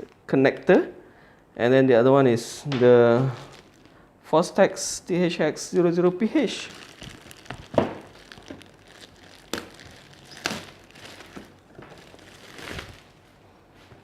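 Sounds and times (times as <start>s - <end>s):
packaging rustling and crinkling: 3.1s - 3.9s, 6.4s - 14.0s.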